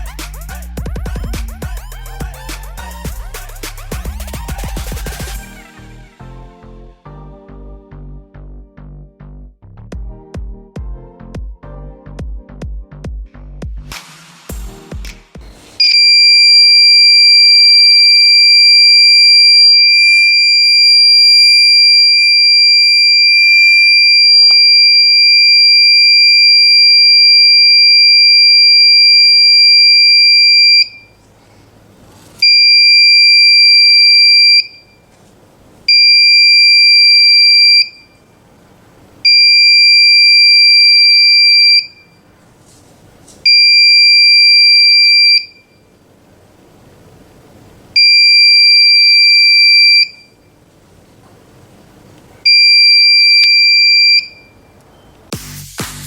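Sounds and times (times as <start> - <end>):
high-pitched alarm buzzer: 15.8 - 31.0, 32.4 - 34.9, 35.9 - 38.0, 39.3 - 42.0, 43.5 - 45.5.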